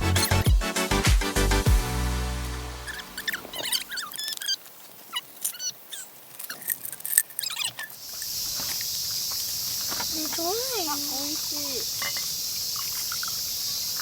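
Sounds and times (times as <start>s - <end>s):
short high chirps and squeaks: 0.0s - 0.5s, 2.9s - 6.7s, 7.4s - 8.0s
background music: 0.0s - 4.0s
high-pitched insect chorus: 8.0s - 14.0s.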